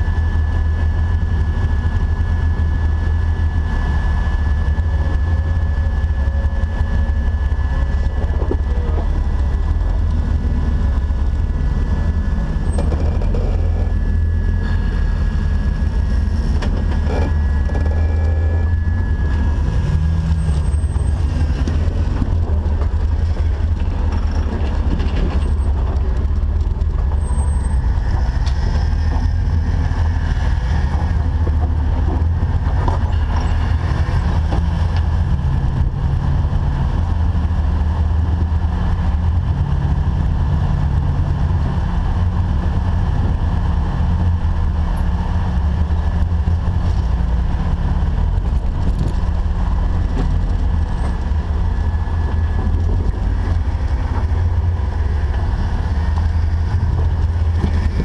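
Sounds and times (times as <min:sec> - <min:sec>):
faint high whine: 0:00.0 - 0:24.4
engine rumbling: 0:00.0 - 0:58.0.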